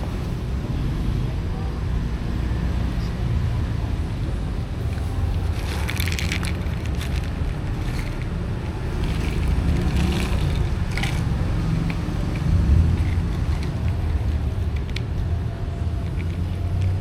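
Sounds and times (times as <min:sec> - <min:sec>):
low rumble: 0:00.0 - 0:17.0
crunching and scraping: 0:04.8 - 0:17.0.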